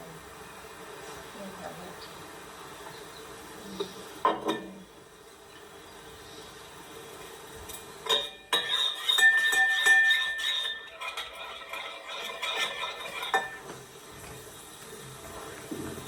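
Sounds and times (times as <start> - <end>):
utensils clinking against dishes: 7.7 - 13.8.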